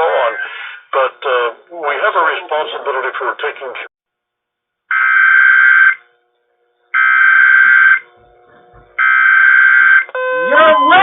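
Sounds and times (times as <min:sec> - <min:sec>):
screeching digital data tones: 0:06.8 - 0:08.1, 0:09.0 - 0:11.0.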